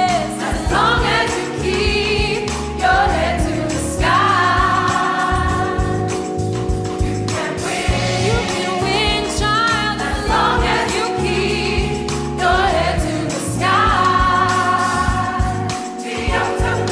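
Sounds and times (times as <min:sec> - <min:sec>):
lead vocal with vibrato: 0:00.0 - 0:06.4, 0:07.0 - 0:16.9
gospel choir singing: 0:00.0 - 0:16.9
band playing: 0:05.5 - 0:09.6.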